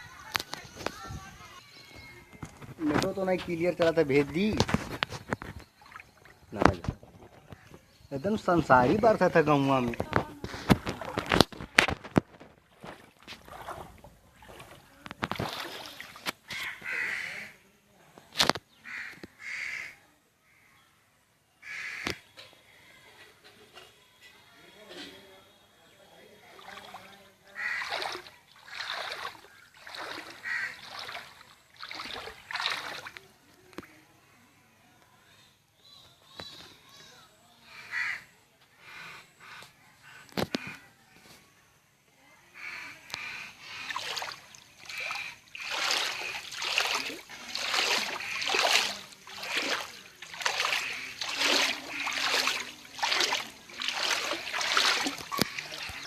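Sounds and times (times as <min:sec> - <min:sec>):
splashing in water: 0:01.9 - 0:17.4, 0:26.4 - 0:33.9, 0:43.0 - 0:56.0.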